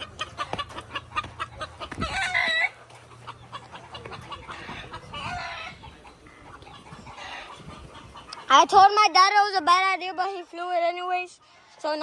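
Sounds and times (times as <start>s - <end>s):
rooster crowing: 2.0s - 2.8s, 4.4s - 5.9s.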